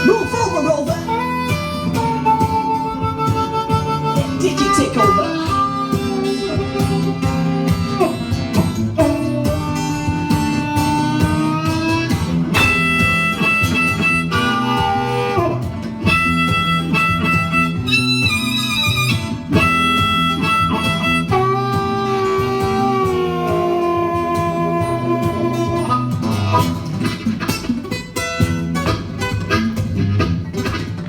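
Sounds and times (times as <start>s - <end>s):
blues harmonica solo: 0.0s - 31.0s
guitar accompaniment: 0.0s - 31.0s.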